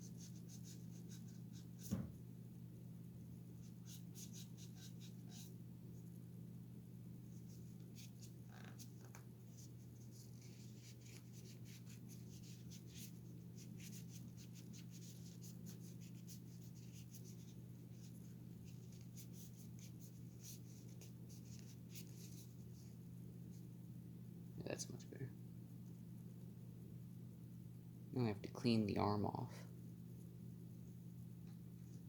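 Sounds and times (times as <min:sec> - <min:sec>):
scratchy rubbing on plastic: 0:00.0 - 0:02.0, 0:03.6 - 0:05.6, 0:07.3 - 0:23.6
steady low hum: 0:00.0 - 0:32.0.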